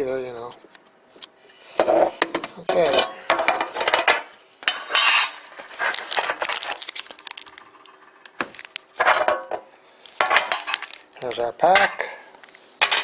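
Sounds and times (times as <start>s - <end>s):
shrink-wrap and cardboard tearing: 5.1s - 8.9s, 10.4s - 11.5s.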